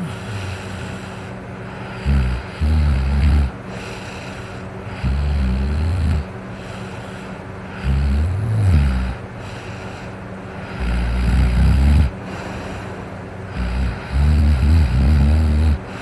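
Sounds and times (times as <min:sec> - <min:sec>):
person snoring: 0:00.0 - 0:06.3, 0:07.7 - 0:09.7, 0:10.6 - 0:12.6, 0:13.5 - 0:16.0
quiet breathing: 0:00.0 - 0:16.0.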